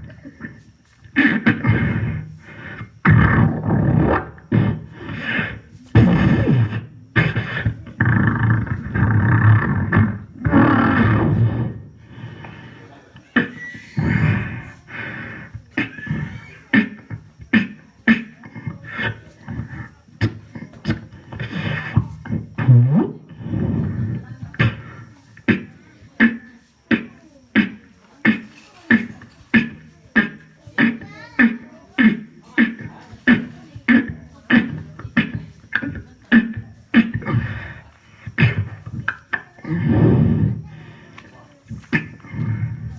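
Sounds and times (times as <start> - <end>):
beatboxer vocal effects: 0.0 - 11.8, 13.4 - 41.0, 41.7 - 42.9
beatboxed percussive hits: 3.0 - 4.8, 24.6 - 40.3.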